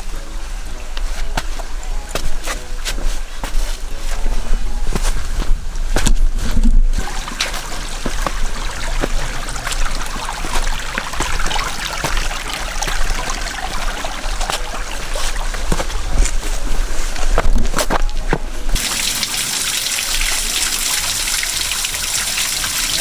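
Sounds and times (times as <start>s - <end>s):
wind rumble on microphone: 0.0s - 7.2s, 13.9s - 18.8s
waterfall trickling and splashing: 7.0s - 17.5s, 18.8s - 23.0s.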